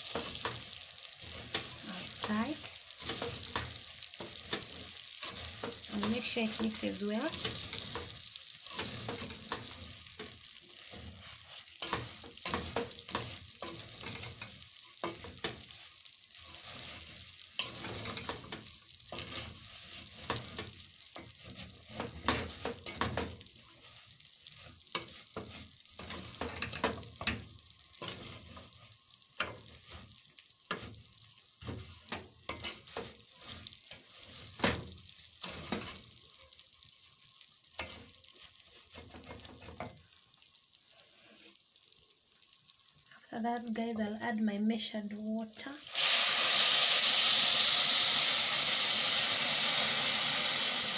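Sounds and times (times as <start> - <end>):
utensil scraping a pot: 0.0 - 27.3
food sizzling: 0.0 - 50.9.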